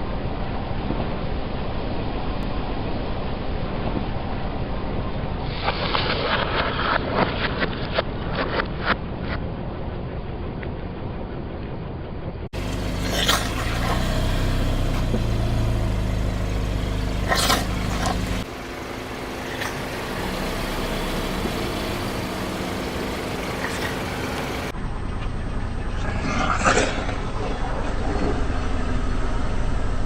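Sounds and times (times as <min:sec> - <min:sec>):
car engine running slowly: 0:10.2 - 0:30.0
objects cracking under tyres: 0:12.6 - 0:14.2, 0:14.9 - 0:18.5.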